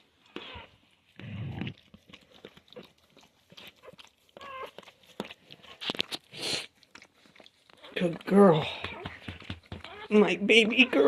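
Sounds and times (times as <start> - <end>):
puppy squeak: 3.8 - 4.8
breathy puff: 6.3 - 6.7.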